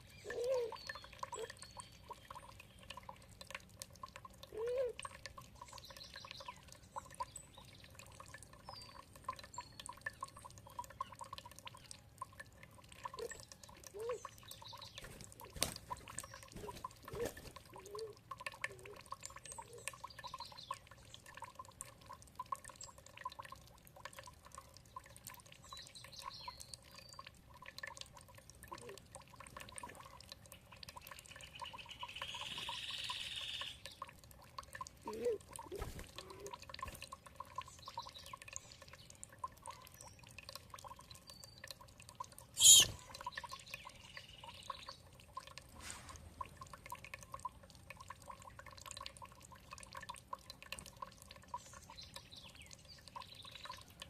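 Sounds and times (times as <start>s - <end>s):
water dripping and trickling: 0.0s - 54.0s
high bird call: 42.6s - 43.0s
short bird chirps: 42.6s - 43.0s.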